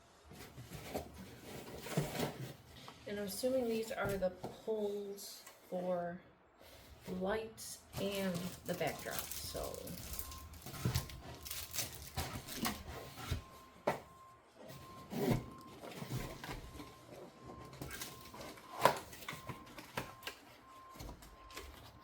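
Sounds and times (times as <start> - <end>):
packaging rustling: 7.9 - 13.5.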